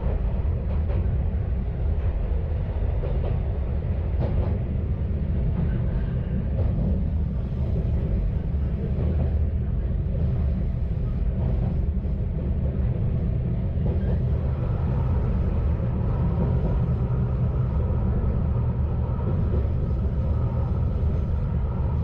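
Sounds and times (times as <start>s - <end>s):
diesel railcar rumbling: 0.0s - 22.0s.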